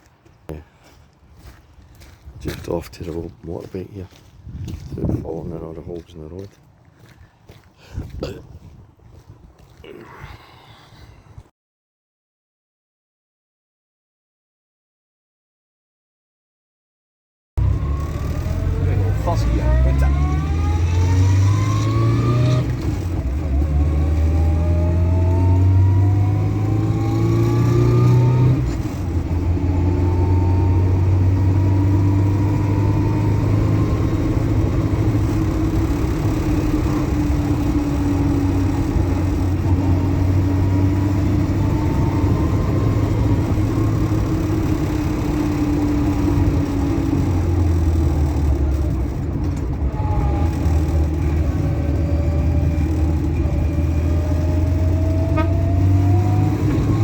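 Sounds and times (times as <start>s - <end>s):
motorcycle engine accelerating: 17.6s - 57.0s.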